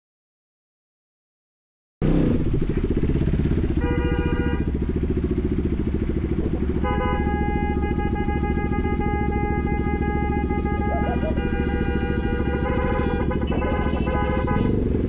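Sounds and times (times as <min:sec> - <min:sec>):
motorcycle engine running: 0:02.0 - 0:15.0
car horns honking: 0:03.6 - 0:15.0.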